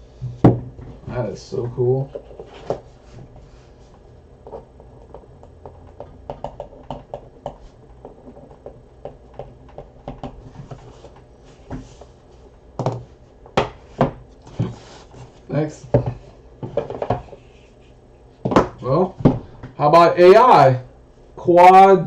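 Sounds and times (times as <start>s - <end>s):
trading cards clicking and tapping: 4.5s - 10.4s.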